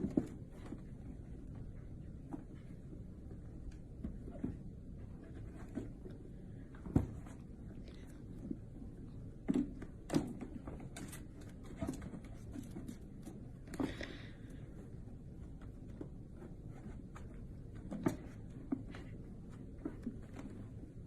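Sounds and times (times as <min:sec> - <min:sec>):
cats play-fighting thumps: 0:00.0 - 0:01.1
low steady hum: 0:00.0 - 0:21.0.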